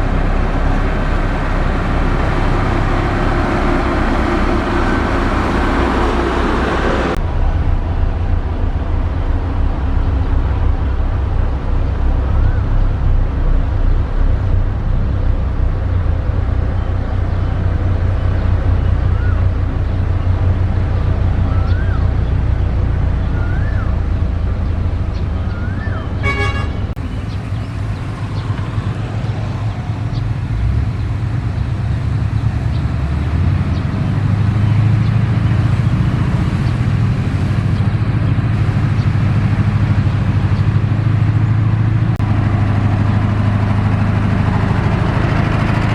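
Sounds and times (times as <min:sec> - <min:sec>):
heavy diesel engine running: 0:00.0 - 0:45.9
short horn toot: 0:26.2 - 0:26.9.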